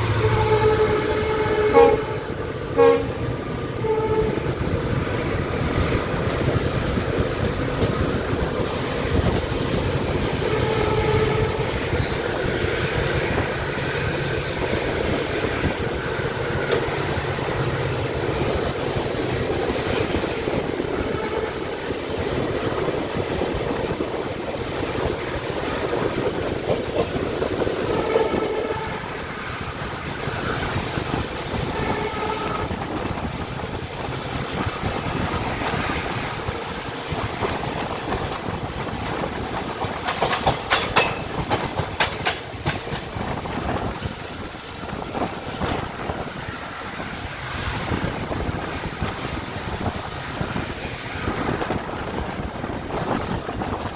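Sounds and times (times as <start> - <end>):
diesel locomotive horn: 0.0 - 4.6, 10.3 - 12.1, 20.9 - 21.8, 27.8 - 29.4, 31.5 - 33.2
train wheels rumbling on rails: 0.0 - 53.9.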